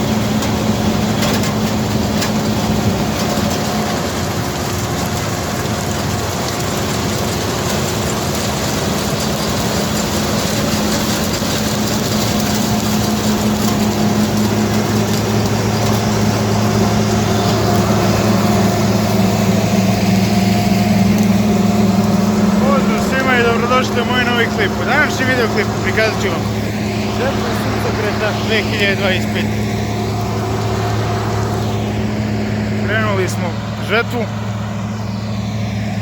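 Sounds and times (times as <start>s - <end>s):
combine harvester running: 0.0s - 36.0s.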